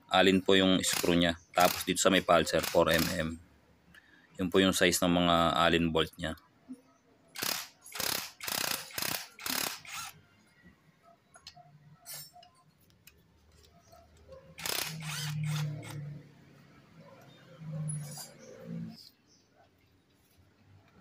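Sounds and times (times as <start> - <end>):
ratchet wrench clicking: 0.8 - 1.9, 2.5 - 3.2, 7.4 - 10.2, 14.6 - 16.1.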